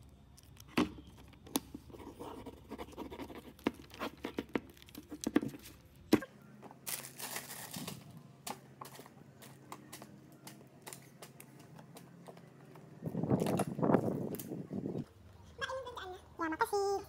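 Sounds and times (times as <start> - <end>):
plastic packaging crinkling: 3.4 - 6.0, 6.7 - 8.3.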